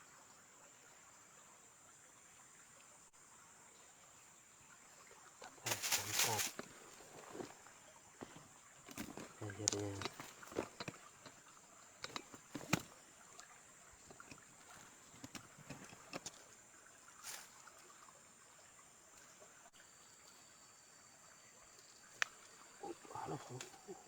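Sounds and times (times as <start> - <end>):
water lapping and trickling: 0.0 - 24.0
light clicks and knocks: 8.2 - 16.5.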